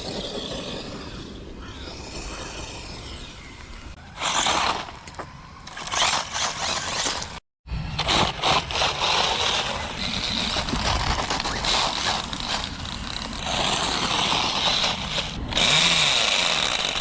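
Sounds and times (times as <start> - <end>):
tyres on rough ground: 0.0 - 17.0
model car motor whine: 8.2 - 17.0.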